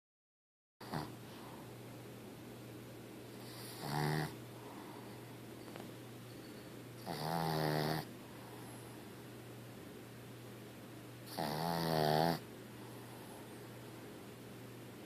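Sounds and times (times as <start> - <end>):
dog snoring: 0.8 - 1.2, 3.4 - 4.4, 7.0 - 8.7, 11.2 - 12.5.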